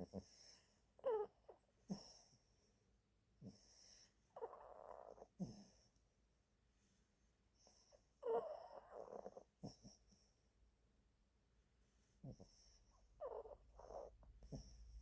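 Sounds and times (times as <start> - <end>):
dog snoring: 0.0 - 1.3, 1.9 - 2.4, 3.4 - 5.9, 7.6 - 10.4, 12.2 - 15.0.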